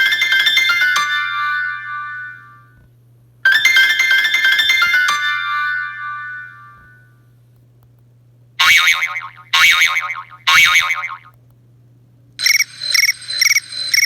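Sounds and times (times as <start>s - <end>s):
phone ringtone chime notes: 0.0s - 2.8s, 3.5s - 7.1s.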